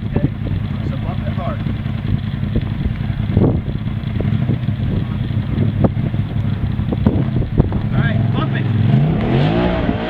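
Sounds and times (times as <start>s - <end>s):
vehicle engine running: 0.0s - 10.0s.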